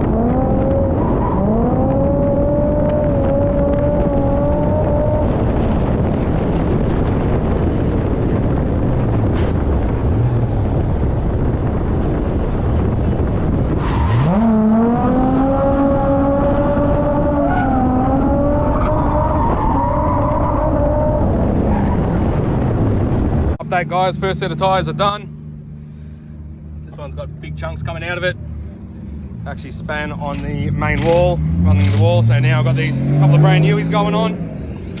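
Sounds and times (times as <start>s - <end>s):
car engine revving hard: 0.0s - 22.4s, 29.2s - 35.0s
tyre and wind noise: 0.0s - 23.6s.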